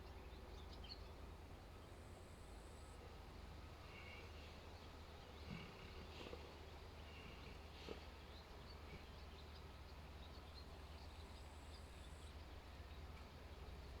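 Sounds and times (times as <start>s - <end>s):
steady low hum: 0.0s - 14.0s
animal snoring softly: 3.8s - 9.5s.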